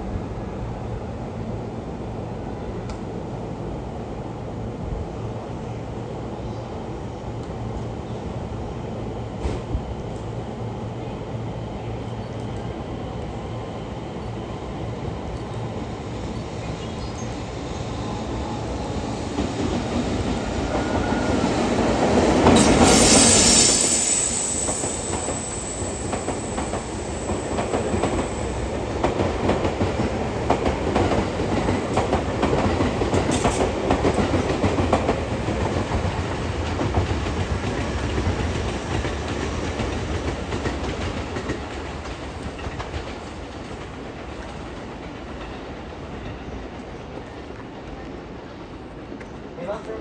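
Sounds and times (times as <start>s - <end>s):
electric locomotive passing: 0.2s - 50.0s
train wheels clickety-clack: 9.4s - 10.3s, 18.7s - 50.0s
thin high whine: 17.2s - 28.7s.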